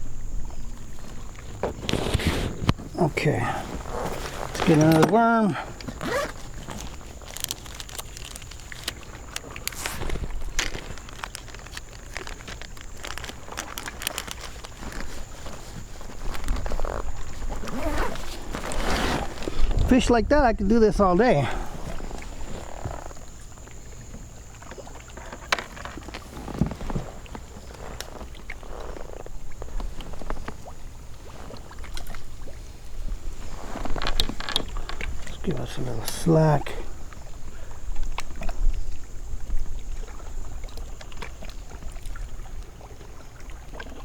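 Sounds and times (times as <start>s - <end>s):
fishing tackle clicks and rustles: 0.1s - 20.0s, 20.9s - 44.0s
plastic packet crinkling: 5.8s - 19.5s.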